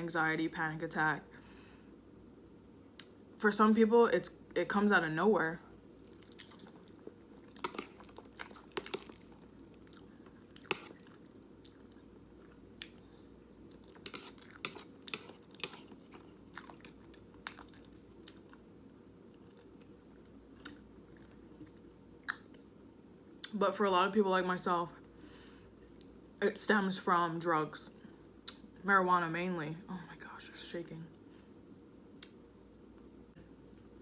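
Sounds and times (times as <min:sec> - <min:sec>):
person chewing noodles: 0:06.0 - 0:18.7.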